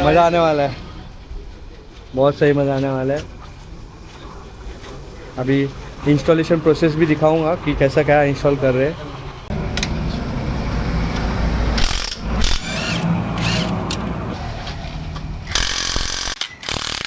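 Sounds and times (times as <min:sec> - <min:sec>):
low mechanical hum: 0:09.0 - 0:17.0
power tool running: 0:09.5 - 0:17.0.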